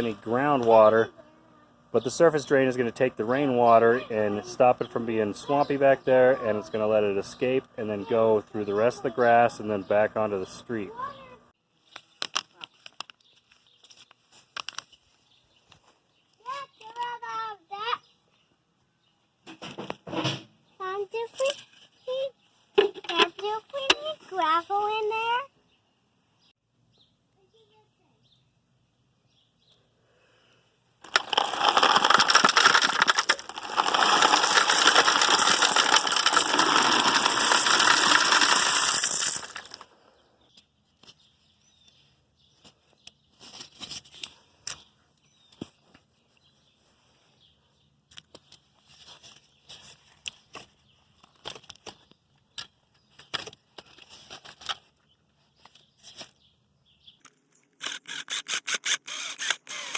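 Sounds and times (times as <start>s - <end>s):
gravel pouring: 31.0s - 39.9s
gravel scraping and clicking: 31.0s - 40.0s.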